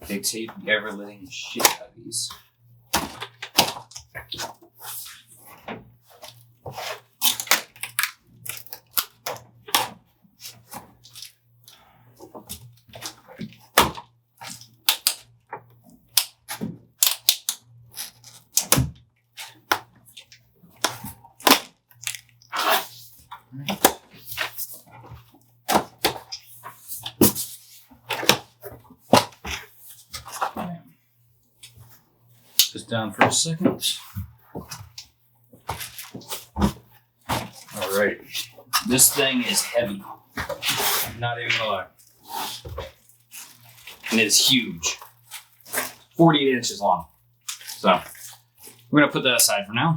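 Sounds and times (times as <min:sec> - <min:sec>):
packing tape ripping: 0:07.2 - 0:11.3, 0:13.8 - 0:15.2, 0:16.1 - 0:18.8, 0:19.4 - 0:23.0, 0:40.6 - 0:46.2.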